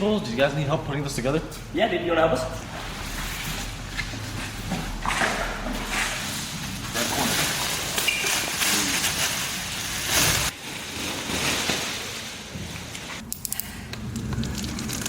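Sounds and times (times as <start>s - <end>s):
packaging rustling and crinkling: 2.8s - 13.2s.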